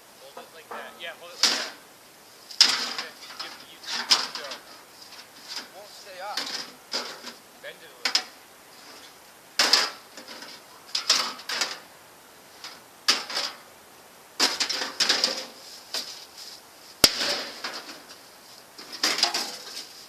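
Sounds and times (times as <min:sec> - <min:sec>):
sheet metal cover rattling: 0:02.6 - 0:05.8, 0:06.4 - 0:07.4, 0:09.6 - 0:11.8, 0:14.4 - 0:15.6, 0:17.1 - 0:18.2, 0:18.8 - 0:20.0.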